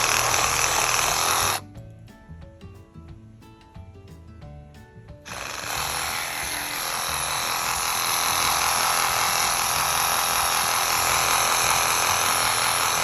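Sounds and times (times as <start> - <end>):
reciprocating saw running: 0.0 - 1.6, 5.3 - 13.0
background music: 0.0 - 13.0.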